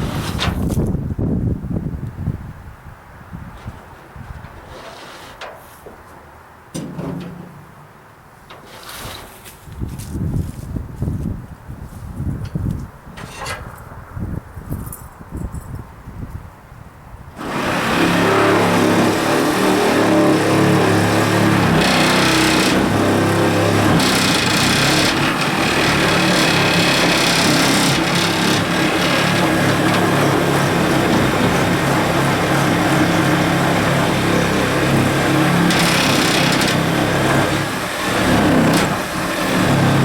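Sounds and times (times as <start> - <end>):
small engine running: 17.4 - 40.0.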